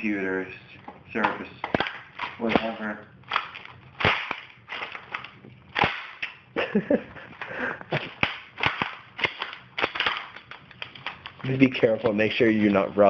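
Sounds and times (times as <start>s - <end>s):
laptop parts cracking and snapping: 1.6s - 6.4s, 7.9s - 11.5s.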